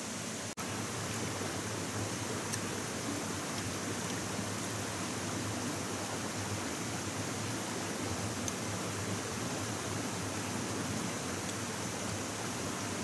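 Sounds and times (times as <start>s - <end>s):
flowing water rushing: 0.0s - 13.0s
faint ticks: 11.4s - 11.6s.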